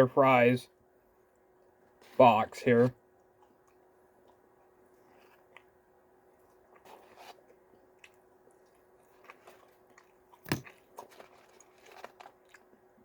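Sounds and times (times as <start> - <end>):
person chewing: 2.9 - 13.0.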